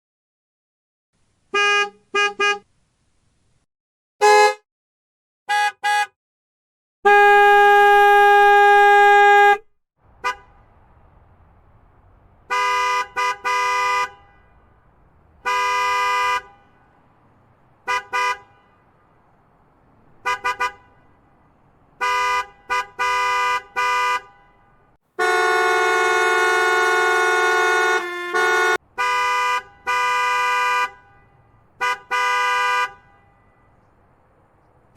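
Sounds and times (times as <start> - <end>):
car horn honks: 1.5 - 2.7, 4.2 - 4.6, 5.5 - 6.2, 7.0 - 10.7, 12.4 - 19.1, 19.8 - 34.0.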